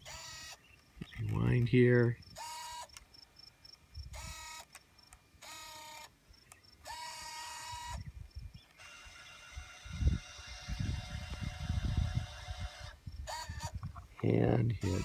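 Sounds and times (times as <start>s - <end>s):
camcorder tape mechanism whirring: 0.0s - 1.4s, 2.4s - 3.1s, 4.1s - 13.9s.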